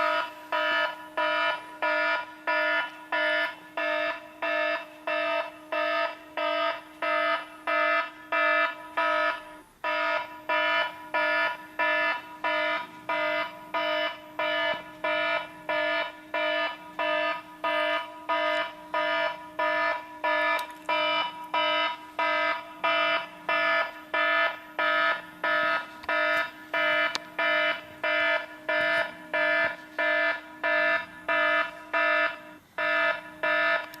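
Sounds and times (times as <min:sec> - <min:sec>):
level crossing warning bell: 0:00.0 - 0:34.0.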